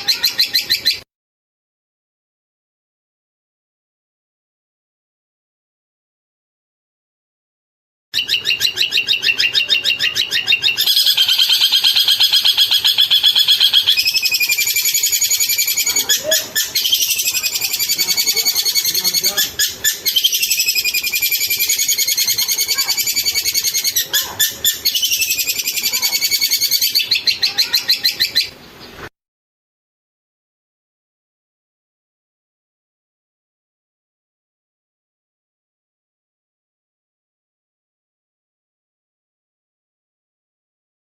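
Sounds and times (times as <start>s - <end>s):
bird chattering song: 0.0s - 1.0s, 8.2s - 29.1s.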